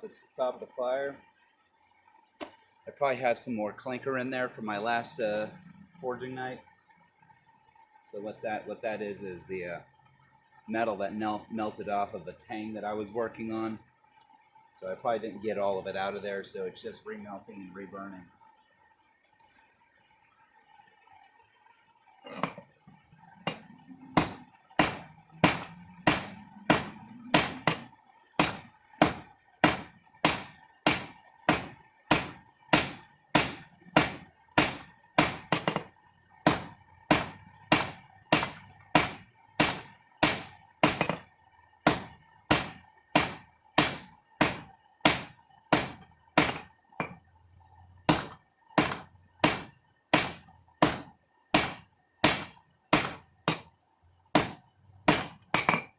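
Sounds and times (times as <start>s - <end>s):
faint steady hum: 0.0s - 55.9s
hammer striking steel on anvil: 24.2s - 35.9s, 36.5s - 41.3s, 41.9s - 47.2s, 48.1s - 53.7s, 54.4s - 55.9s.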